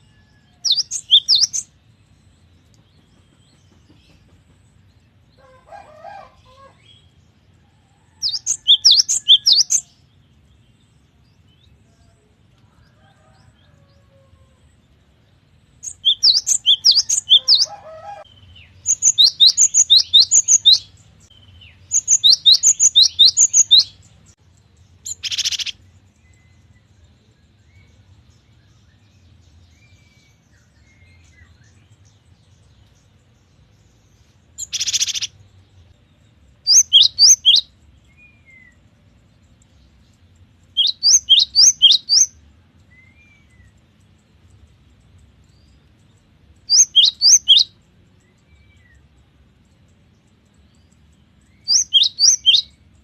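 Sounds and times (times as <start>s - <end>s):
bird singing high whistled notes: 36.7s - 38.7s, 40.8s - 42.3s, 46.7s - 47.8s, 51.6s - 52.8s.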